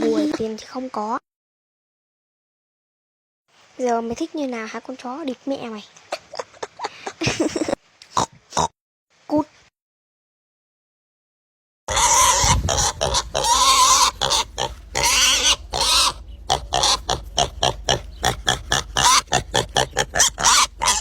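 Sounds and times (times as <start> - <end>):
pig squealing and grunting: 11.9 - 21.0.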